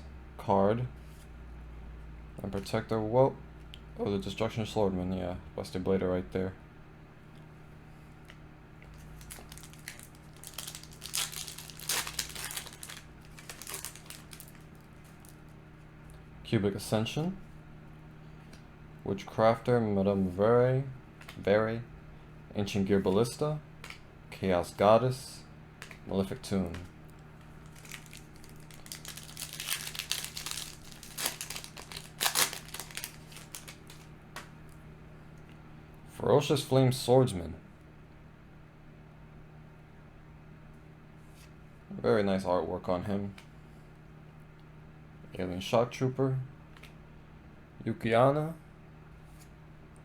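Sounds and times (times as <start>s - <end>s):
foil wrapper crinkling and tearing: 8.9s - 15.4s, 27.4s - 34.1s.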